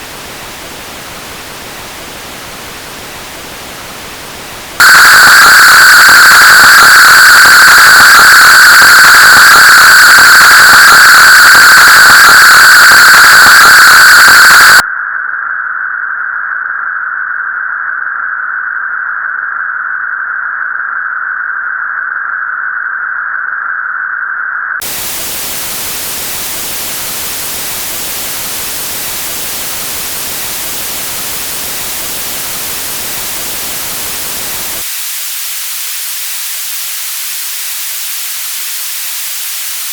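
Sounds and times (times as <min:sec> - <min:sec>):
filtered white noise hiss: 0:00.0 - 0:06.0, 0:24.8 - 0:36.3.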